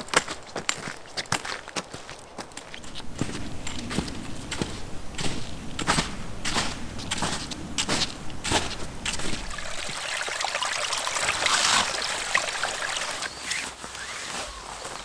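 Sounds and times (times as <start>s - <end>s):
footsteps: 0.0s - 15.0s
water dripping: 6.5s - 13.6s
water trickling: 6.5s - 13.8s.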